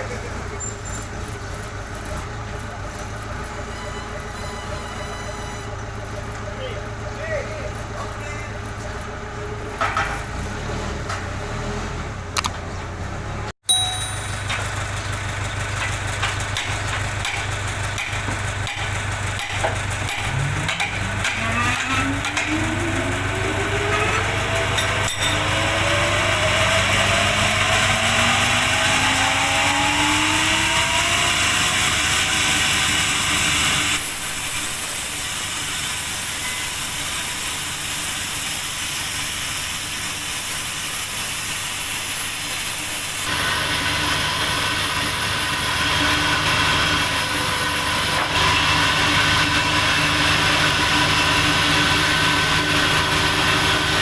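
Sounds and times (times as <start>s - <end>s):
motor whine rising in pitch: 20.4s - 54.0s
saw hissing through timber: 27.9s - 43.3s.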